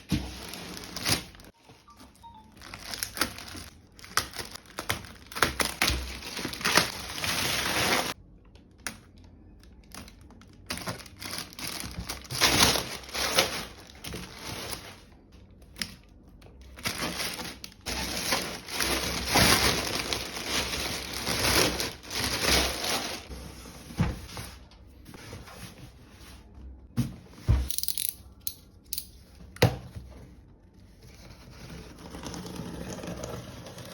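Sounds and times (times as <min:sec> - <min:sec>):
packaging crinkling and tearing: 0:02.6 - 0:15.0, 0:16.6 - 0:23.3.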